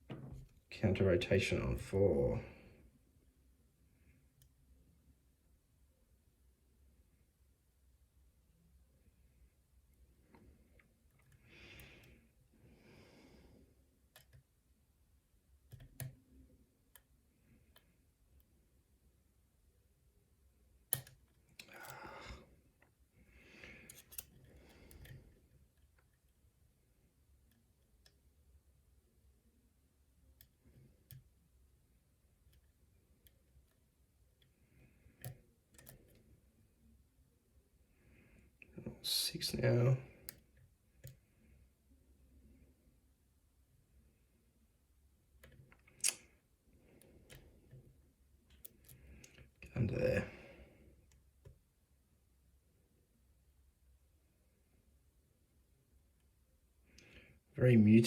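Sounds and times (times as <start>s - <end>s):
soft breaths: 9.0s - 14.2s, 21.4s - 26.1s, 37.7s - 43.0s, 45.4s - 51.4s, 56.7s - 57.5s
lock pick clicking in lock: 20.9s - 21.2s, 23.9s - 25.2s
lock pick clicks: 20.9s - 22.0s.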